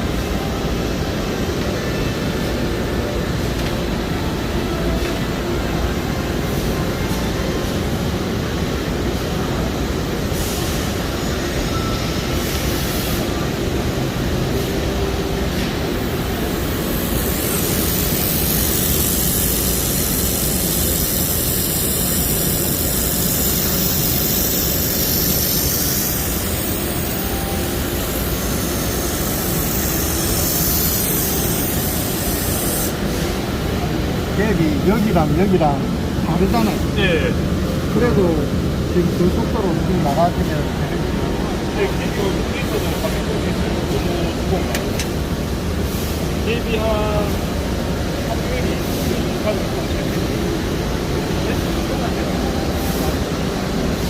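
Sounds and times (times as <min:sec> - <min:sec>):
welding machine humming: 0:00.0 - 0:54.0
loud high gas hiss: 0:08.8 - 0:44.8.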